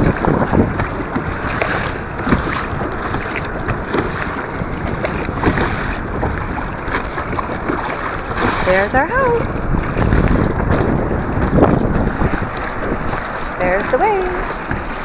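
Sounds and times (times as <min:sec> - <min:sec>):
water splashing around kayak: 0:00.0 - 0:15.0
wind buffeting microphone: 0:00.0 - 0:15.0.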